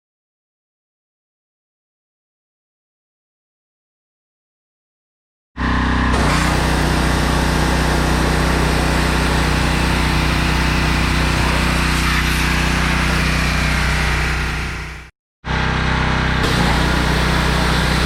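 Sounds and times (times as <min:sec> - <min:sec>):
power washer engine: 0:05.6 - 0:18.0.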